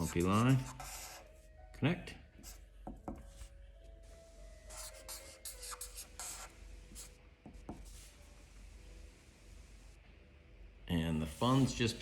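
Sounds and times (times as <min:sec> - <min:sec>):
pen scratching on paper: 0:00.0 - 0:01.2, 0:04.7 - 0:08.2.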